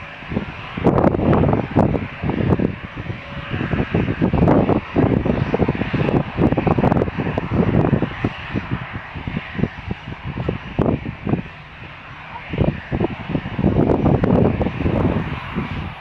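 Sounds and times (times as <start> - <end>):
airliner engines rumbling: 0.0 - 16.0.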